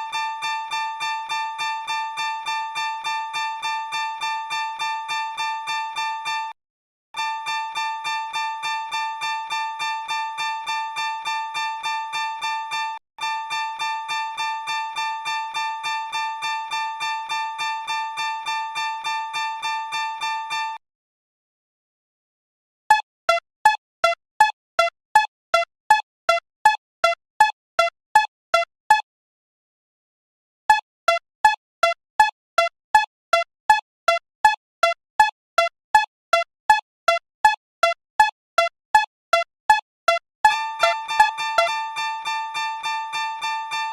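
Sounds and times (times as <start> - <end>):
railroad crossing bell ringing: 40.5 - 43.9.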